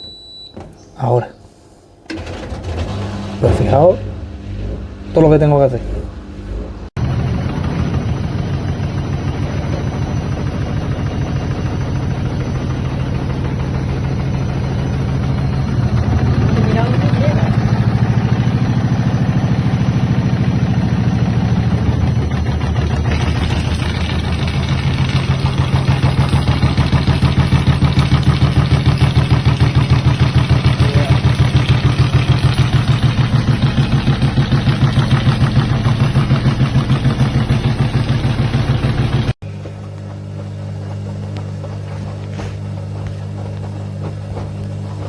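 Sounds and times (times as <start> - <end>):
washer-dryer pulsing hum: 0.0 - 45.0.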